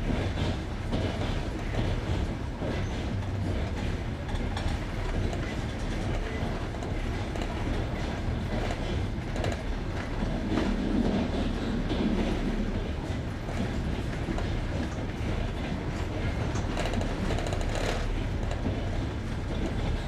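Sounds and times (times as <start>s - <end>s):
train wheels clickety-clack: 0.0s - 20.0s.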